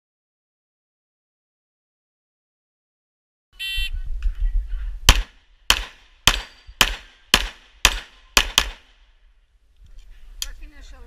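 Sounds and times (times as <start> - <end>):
pistol shots: 5.1 - 9.0.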